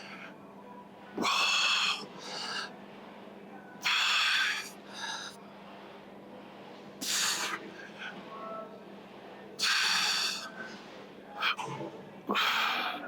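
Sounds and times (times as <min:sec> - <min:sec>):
man breathing hard: 0:09.6 - 0:10.5.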